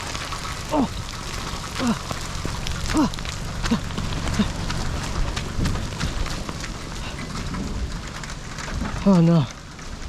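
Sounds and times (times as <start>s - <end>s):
heavy rain falling: 0.0s - 10.0s
low rumble: 0.0s - 10.0s
raindrop hits close by: 0.0s - 10.0s.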